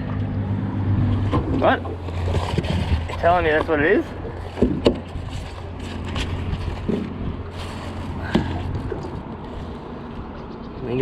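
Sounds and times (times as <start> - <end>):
low hum: 0.0 - 3.2.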